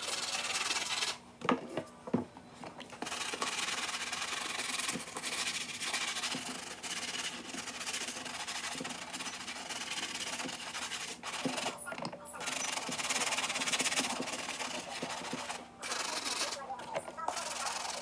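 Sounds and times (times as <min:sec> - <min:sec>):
scratchy rubbing on sneaker: 0:00.0 - 0:01.2, 0:03.0 - 0:11.8, 0:12.4 - 0:16.6, 0:17.2 - 0:18.0.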